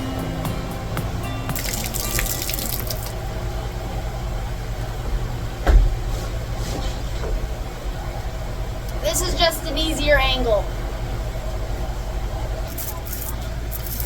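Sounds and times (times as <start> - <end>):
low steady hum: 0.0 - 14.0
liquid squirting: 1.5 - 3.2, 12.7 - 14.0
dull thump: 5.6 - 7.4.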